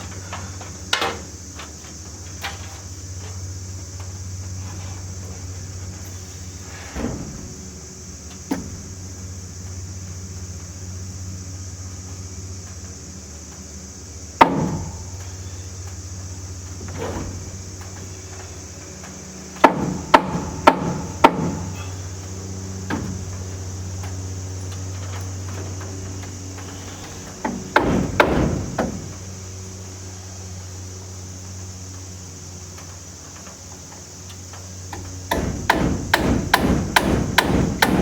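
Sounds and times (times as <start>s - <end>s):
hammer driving nails into wood: 19.6s - 21.9s, 27.4s - 29.1s, 34.9s - 38.0s
low hum: 35.0s - 38.0s.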